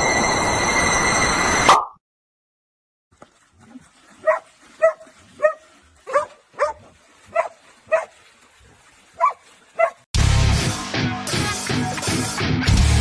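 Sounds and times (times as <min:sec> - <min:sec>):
dog barking: 0:04.2 - 0:08.2, 0:09.2 - 0:10.0.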